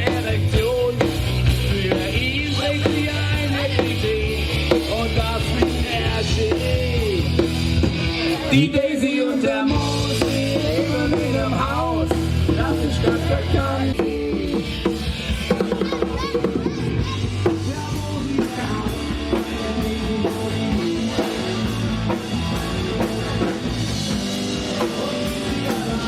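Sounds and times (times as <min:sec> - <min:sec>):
bass guitar: 0:00.0 - 0:26.0
drums: 0:00.0 - 0:26.0
electric guitar: 0:00.0 - 0:26.0
melodic lead line: 0:09.7 - 0:26.0.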